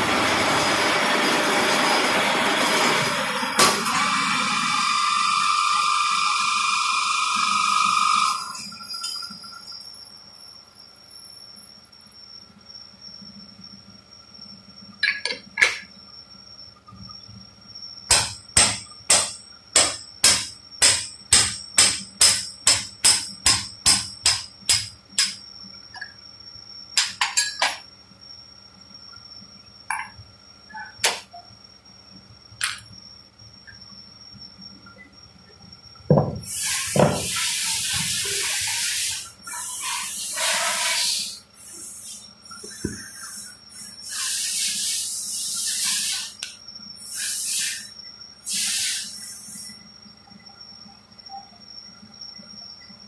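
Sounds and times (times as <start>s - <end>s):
workshop machinery whining: 0.0s - 9.8s, 34.6s - 48.0s
hammer striking metal: 18.1s - 25.4s
hiss of blowing air: 36.5s - 42.2s, 43.4s - 46.4s, 47.0s - 49.7s.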